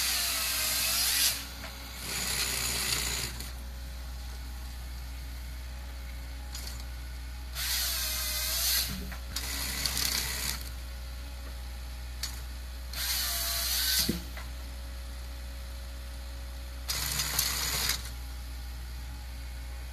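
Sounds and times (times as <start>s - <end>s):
harsh mechanical noise bursts: 0.0s - 3.6s, 7.5s - 10.8s, 12.2s - 14.4s, 16.8s - 18.2s
forestry machine humming: 0.0s - 19.9s.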